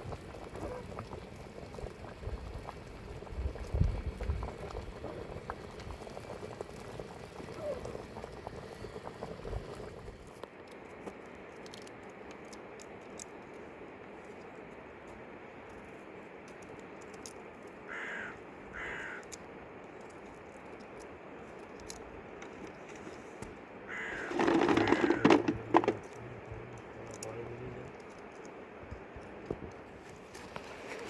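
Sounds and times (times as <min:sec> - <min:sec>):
animal calls: 0:07.4 - 0:08.3, 0:23.9 - 0:26.1
steady background hiss: 0:11.8 - 0:31.0.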